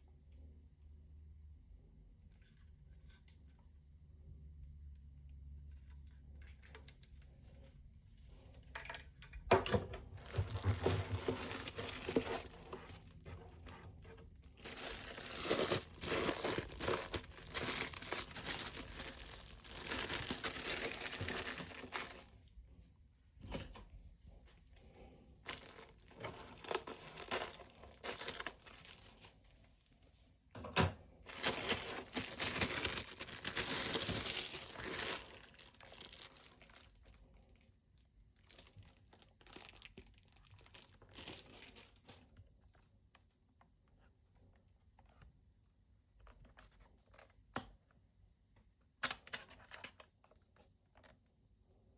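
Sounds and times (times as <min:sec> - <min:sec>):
crinkly material rustling: 0:10.0 - 0:22.8, 0:24.2 - 0:30.4, 0:31.2 - 0:47.5.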